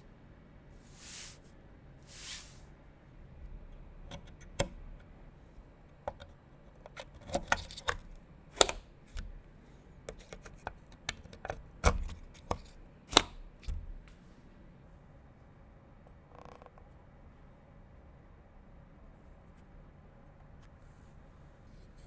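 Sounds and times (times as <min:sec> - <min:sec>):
computer parts clicking and knocking: 0:06.1 - 0:09.5, 0:10.1 - 0:14.1.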